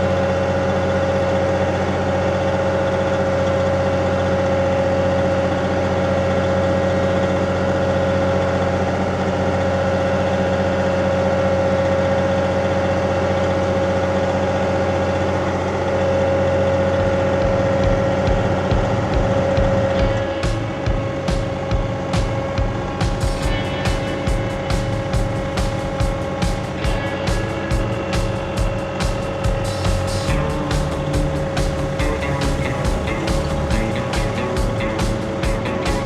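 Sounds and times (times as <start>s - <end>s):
tractor diesel engine running: 0.0s - 36.0s
low pulsing beat: 16.9s - 36.0s.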